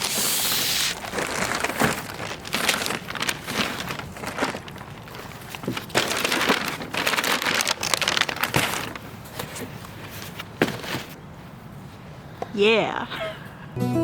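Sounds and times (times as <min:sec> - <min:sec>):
packaging crinkling: 0:00.0 - 0:11.2.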